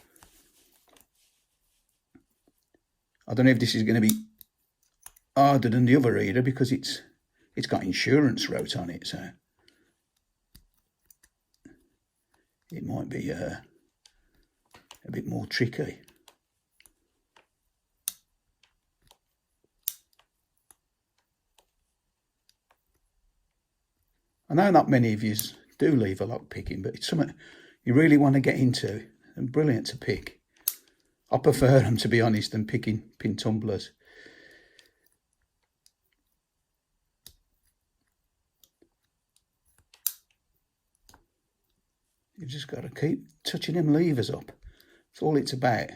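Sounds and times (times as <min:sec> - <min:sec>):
lock pick clicking and scraping: 0:19.8 - 0:20.8
lock pick metallic clicks: 0:19.8 - 0:20.8, 0:30.6 - 0:31.0, 0:39.7 - 0:40.3.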